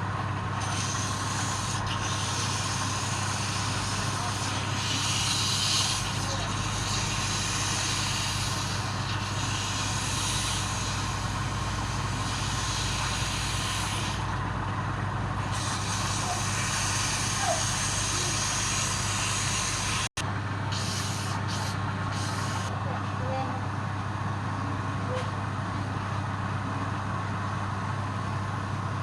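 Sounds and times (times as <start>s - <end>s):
lathe motor hum: 0.0s - 29.0s
woodturning hiss: 0.6s - 14.4s, 15.4s - 22.7s.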